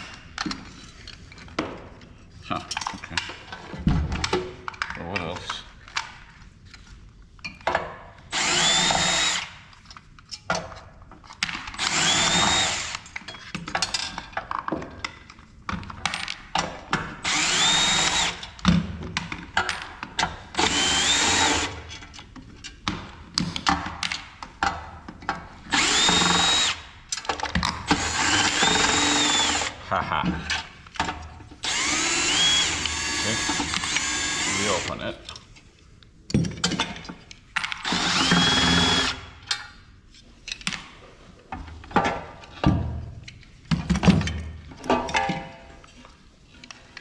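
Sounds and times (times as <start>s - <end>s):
electric drill-driver whining: 8.3s - 9.5s, 11.8s - 13.0s, 17.2s - 18.5s, 20.6s - 21.8s, 25.7s - 26.9s, 27.9s - 29.8s, 31.6s - 34.9s, 37.8s - 39.3s.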